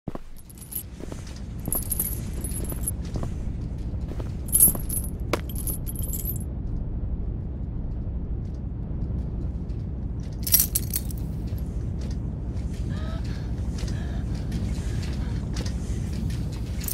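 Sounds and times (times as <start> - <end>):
steady low rumble: 0.1 - 16.9
keys jangling: 0.2 - 0.9, 1.6 - 2.9, 4.1 - 6.4, 10.4 - 11.3.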